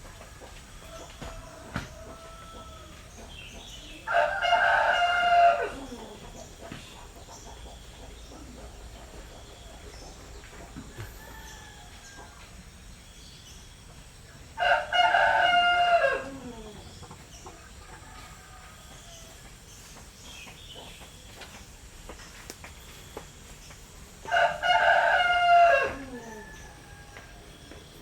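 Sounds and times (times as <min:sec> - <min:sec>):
rooster crowing: 0:00.5 - 0:03.1, 0:04.0 - 0:06.2, 0:10.9 - 0:12.5, 0:14.6 - 0:16.8, 0:17.9 - 0:19.5, 0:24.3 - 0:27.8.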